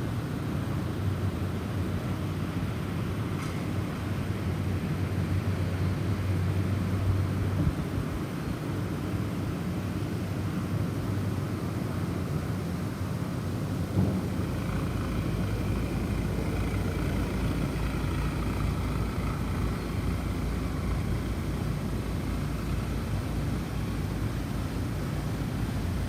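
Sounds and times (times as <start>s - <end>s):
faint wavering wind whistle: 5.0s - 26.0s
snowstorm wind rumble: 7.0s - 26.0s.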